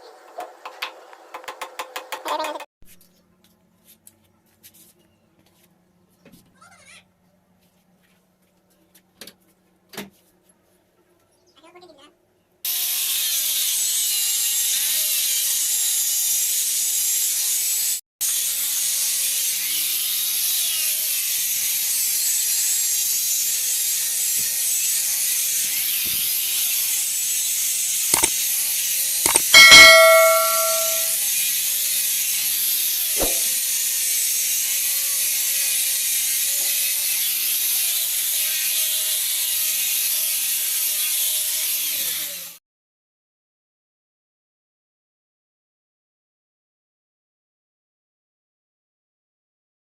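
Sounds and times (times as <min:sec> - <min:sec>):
ringing metallic ding: 0:29.3 - 0:31.1
sharp knocks: 0:29.3 - 0:31.1.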